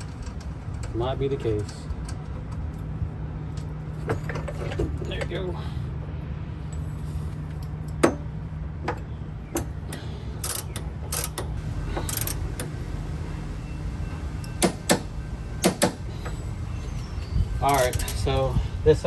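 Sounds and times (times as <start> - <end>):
steady low hum: 4.8 - 19.0
metallic clicks and clinks: 15.6 - 18.6.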